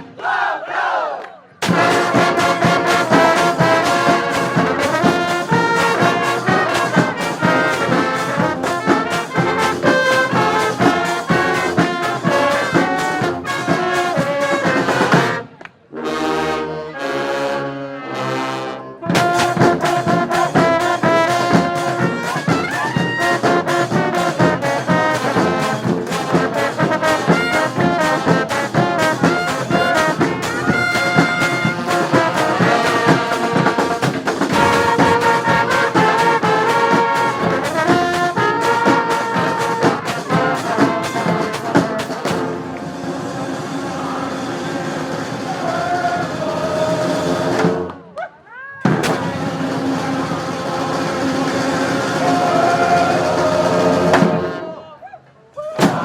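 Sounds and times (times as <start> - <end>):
driving drum beat: 1.6 - 15.4, 19.1 - 47.8, 48.9 - 54.6
brass band playing: 1.6 - 48.1, 48.9 - 54.9.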